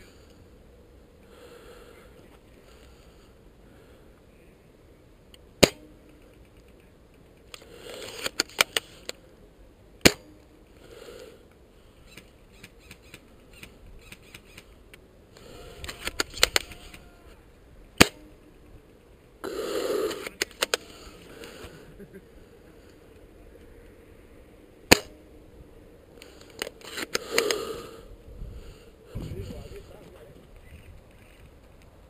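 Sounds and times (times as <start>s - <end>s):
rustling hiss: 0.0s - 32.0s
airsoft guns firing: 5.6s - 5.9s, 10.0s - 10.4s, 18.0s - 18.3s, 24.9s - 25.2s.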